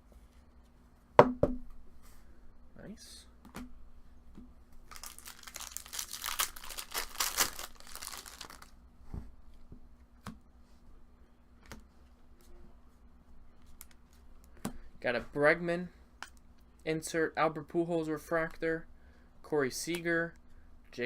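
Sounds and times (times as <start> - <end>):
foil wrapper crinkling and tearing: 4.9 - 8.7.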